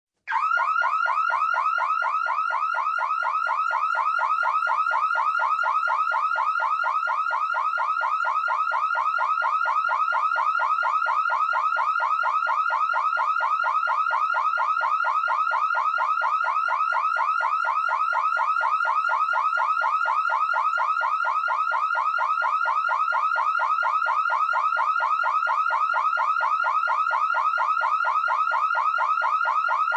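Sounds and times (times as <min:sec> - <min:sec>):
electronic alarm siren warbling: 0:00.3 - 0:29.9.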